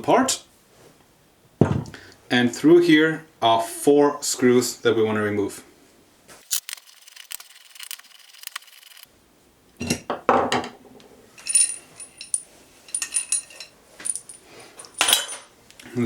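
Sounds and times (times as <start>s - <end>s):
ringing metallic clinks: 11.4s - 15.5s.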